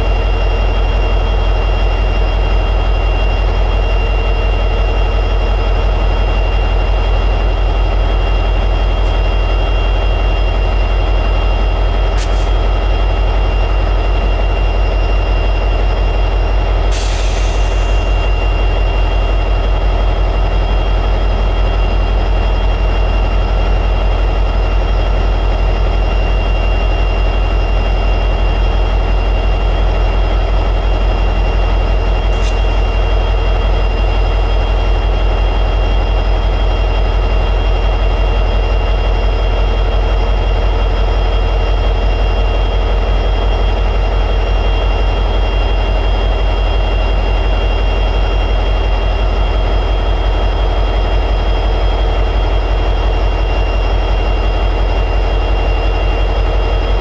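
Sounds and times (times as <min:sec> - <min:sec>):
locomotive diesel engine idling: 0:00.0 - 0:57.0
high whine: 0:50.6 - 0:57.0.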